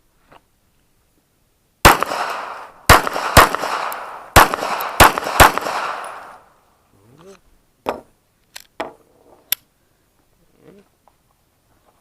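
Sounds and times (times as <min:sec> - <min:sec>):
handgun shots with ringing echo: 0:01.9 - 0:06.4.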